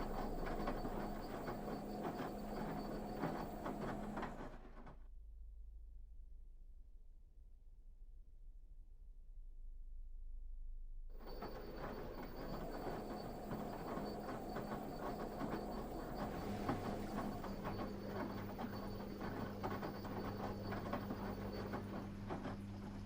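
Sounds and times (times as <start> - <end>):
drum clicking and rattling: 0.0 - 4.5, 11.2 - 23.0
washing machine motor hum: 0.0 - 4.8, 11.2 - 23.0.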